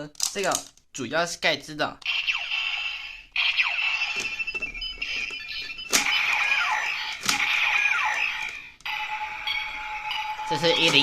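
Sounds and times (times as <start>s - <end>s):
toy beeping tones: 2.1s - 11.0s
falling electronic chirps: 2.2s - 8.4s
looping electronic standby tune: 2.2s - 11.0s.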